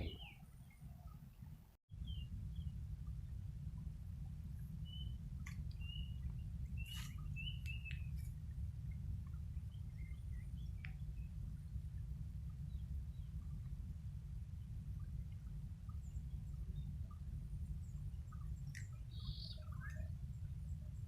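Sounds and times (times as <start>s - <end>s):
steady low rumble: 1.2s - 21.0s
short bird chirps: 6.8s - 8.2s, 19.1s - 20.1s.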